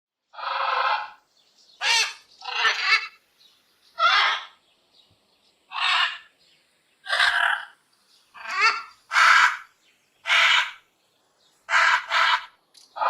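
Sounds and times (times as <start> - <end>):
parrot squawking: 0.4 - 1.2, 1.8 - 3.2, 4.0 - 4.6, 5.7 - 6.3, 7.0 - 7.8, 8.4 - 10.8, 11.7 - 13.0.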